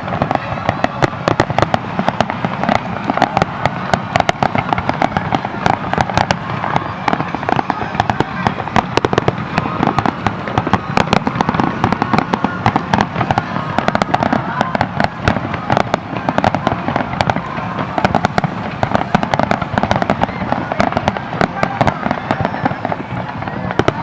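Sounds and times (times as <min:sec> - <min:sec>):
fireworks bursting and crackling: 0:00.0 - 0:24.0.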